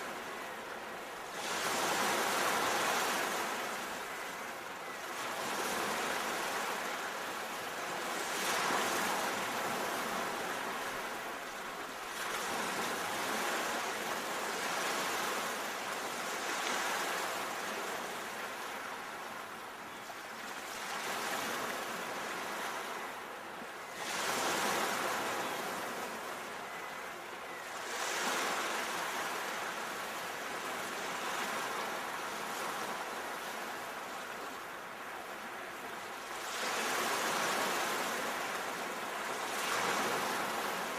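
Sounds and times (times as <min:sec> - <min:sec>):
sea waves washing ashore: 0:00.0 - 0:19.6, 0:20.4 - 0:40.9.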